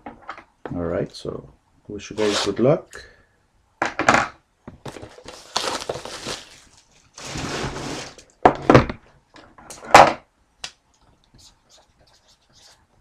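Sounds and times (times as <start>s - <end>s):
wrapping rustling and tearing: 4.9s - 8.2s.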